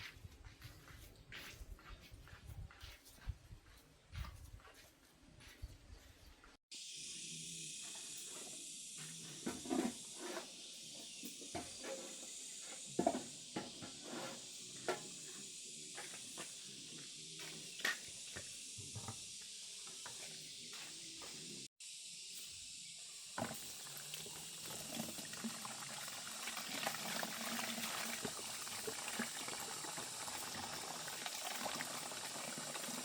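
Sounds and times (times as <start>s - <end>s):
high-pitched hiss: 6.7s - 25.1s.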